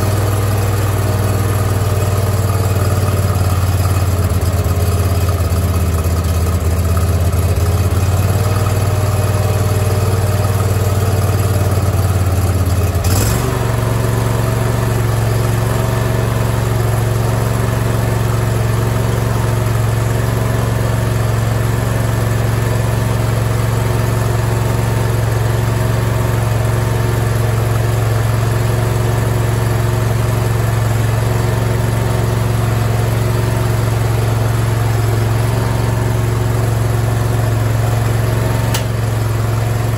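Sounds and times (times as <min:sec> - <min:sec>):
lawn mower engine running: 0:00.0 - 0:39.9
click: 0:38.7 - 0:39.0.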